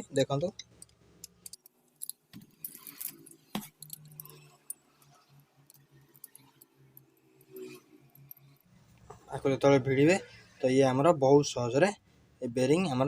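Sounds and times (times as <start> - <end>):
metallic clicks and clinks: 0.6 - 8.7.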